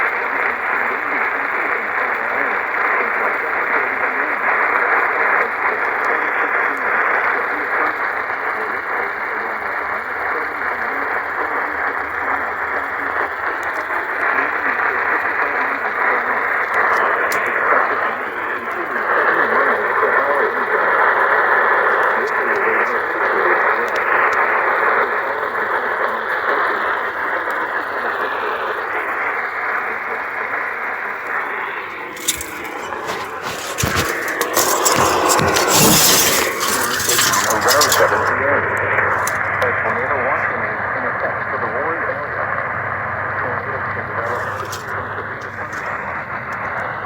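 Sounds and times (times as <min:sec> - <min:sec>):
radio static hiss: 0:00.0 - 0:34.4
crackles: 0:31.2 - 0:42.0.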